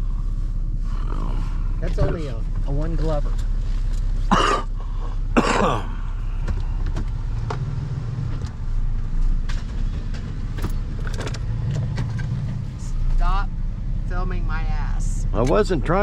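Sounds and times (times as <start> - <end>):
vehicle engine idling: 0.0 - 16.0
light clicks and rattles: 9.2 - 12.8.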